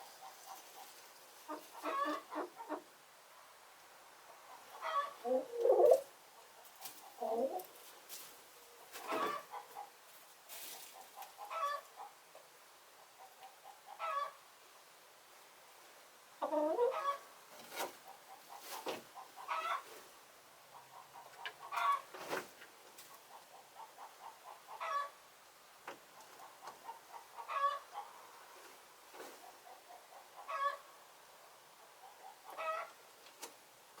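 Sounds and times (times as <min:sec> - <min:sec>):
hens clucking: 0:00.0 - 0:03.0, 0:04.3 - 0:07.8, 0:08.7 - 0:10.0, 0:10.8 - 0:12.4, 0:13.0 - 0:14.4, 0:16.4 - 0:25.2, 0:25.9 - 0:31.0, 0:31.8 - 0:33.5.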